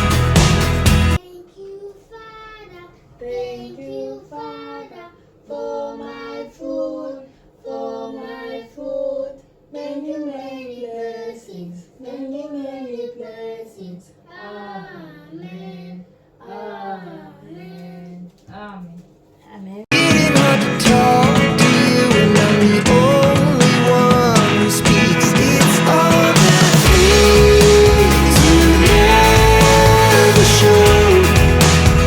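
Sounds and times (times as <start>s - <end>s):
loud music: 0.0s - 1.2s, 19.9s - 32.0s
child singing unaccompanied: 1.2s - 18.3s.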